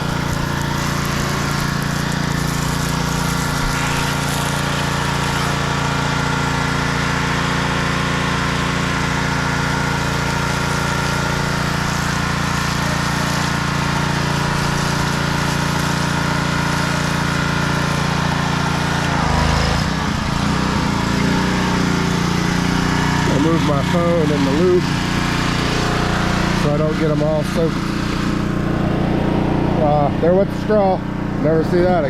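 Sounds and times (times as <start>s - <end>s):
hiss of water spray: 0.0s - 5.8s
pressure washer engine running: 0.0s - 32.0s.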